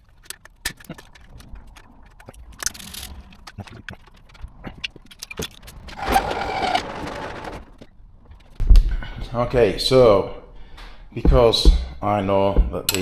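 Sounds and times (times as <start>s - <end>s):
metallic rattling scrape: 5.2s - 7.9s.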